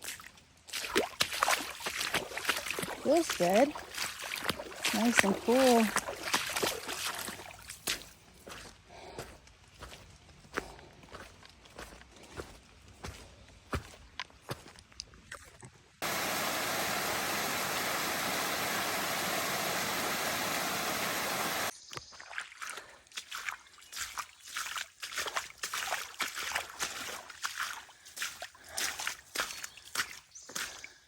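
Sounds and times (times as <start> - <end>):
footsteps on a trail: 0.0 - 31.0
stream water rushing: 0.8 - 7.5, 16.0 - 21.7.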